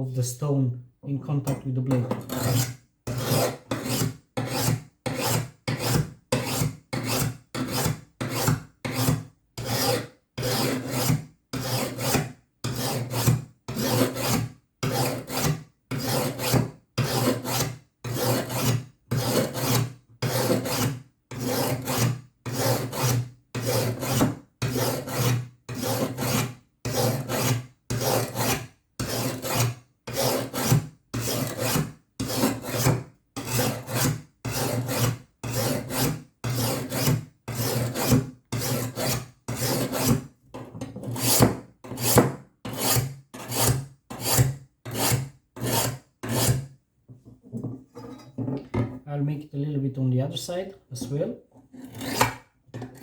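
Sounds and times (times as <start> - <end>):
sharpening stone scraping metal blade: 2.0 - 40.1, 51.8 - 53.0.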